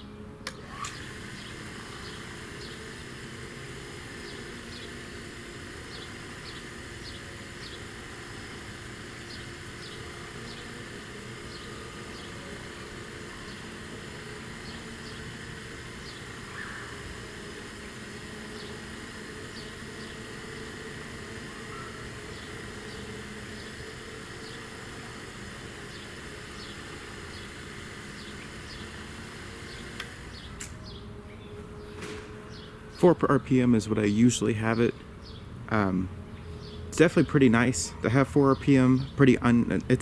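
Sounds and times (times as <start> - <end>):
siren rotator hum: 0.0 - 40.0
click: 0.4 - 1.0, 30.0 - 30.8.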